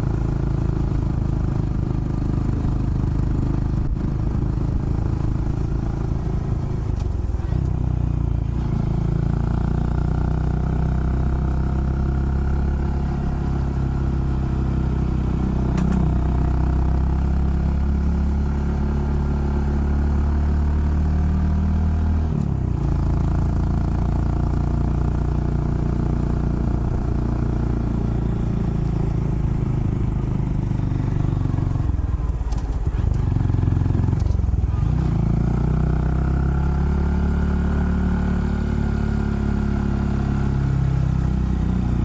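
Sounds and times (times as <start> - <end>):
small motorcycle engine running: 22.8 - 42.0.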